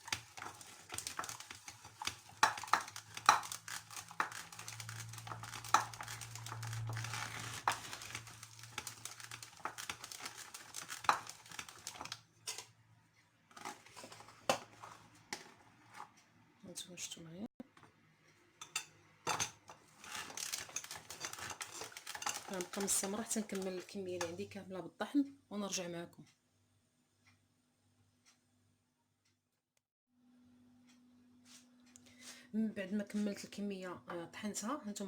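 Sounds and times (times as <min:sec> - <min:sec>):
food grinder squelching and clicking: 0:00.0 - 0:12.6, 0:19.6 - 0:24.5.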